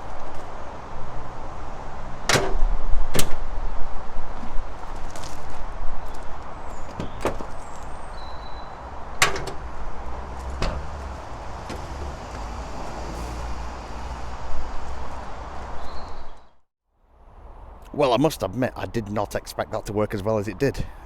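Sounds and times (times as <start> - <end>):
tools knocking and clicking on metal: 2.3 - 3.4, 9.2 - 12.4
metal clank: 2.3 - 3.5, 6.9 - 13.6.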